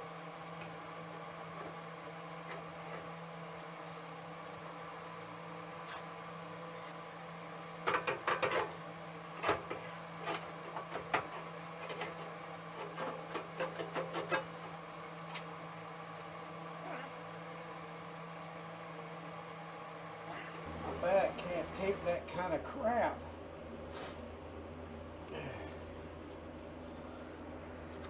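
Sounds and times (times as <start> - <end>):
steady background hum: 0.0 - 28.0.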